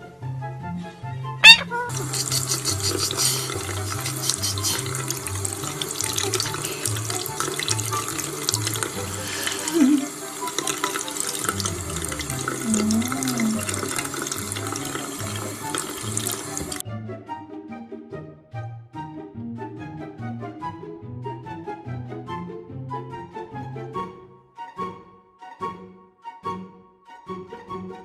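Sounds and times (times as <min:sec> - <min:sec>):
water running from a tap: 0:01.9 - 0:16.8.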